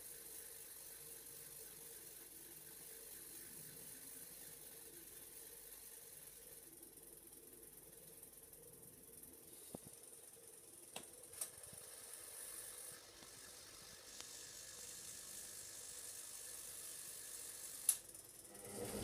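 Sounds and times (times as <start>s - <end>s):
faint steady hiss: 0.0s - 19.0s
washing machine drum motor: 0.0s - 19.0s
washing machine running quietly: 0.0s - 19.0s
sharp mechanical clicks: 17.8s - 18.2s.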